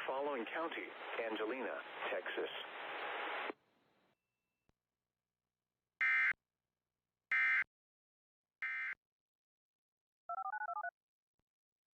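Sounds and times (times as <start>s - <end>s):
touch-tone beeps: 10.3s - 10.9s.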